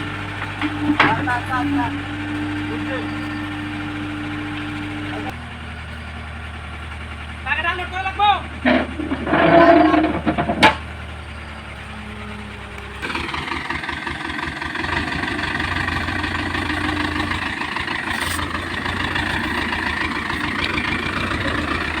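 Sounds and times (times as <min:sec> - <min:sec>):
heavy diesel engine running: 0:00.0 - 0:22.0.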